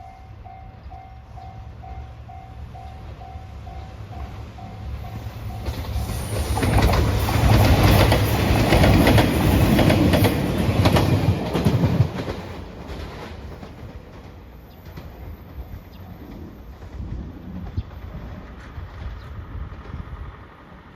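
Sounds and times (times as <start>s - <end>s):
train passing at speed: 0.0s - 20.9s
wheels clicking over rail joints: 5.6s - 20.1s.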